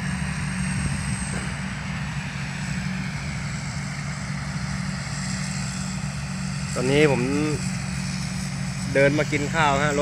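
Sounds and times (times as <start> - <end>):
diesel engine humming: 0.0 - 10.0.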